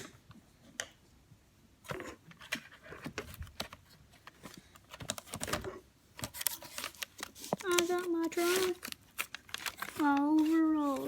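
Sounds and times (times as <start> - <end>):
hands handling cardboard and tape: 2.0 - 11.0.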